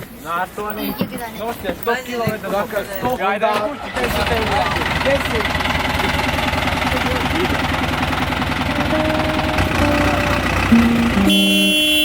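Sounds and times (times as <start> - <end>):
vehicle engine running: 4.0 - 12.0
music: 8.7 - 12.0.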